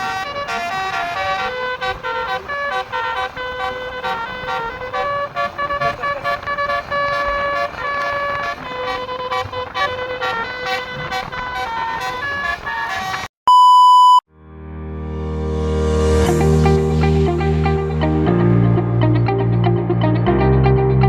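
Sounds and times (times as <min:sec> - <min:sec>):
bus horn playing a tune: 0:00.0 - 0:13.3.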